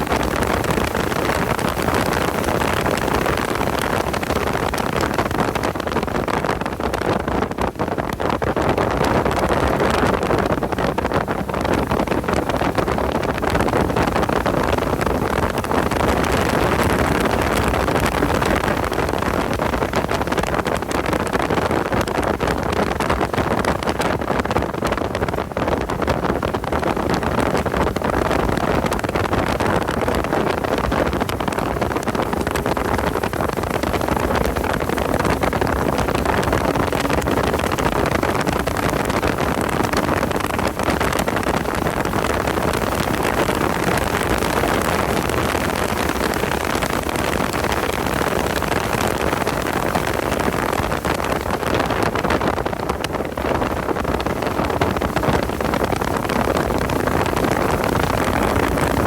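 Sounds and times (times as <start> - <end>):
wind and road noise: 0.0 - 59.0.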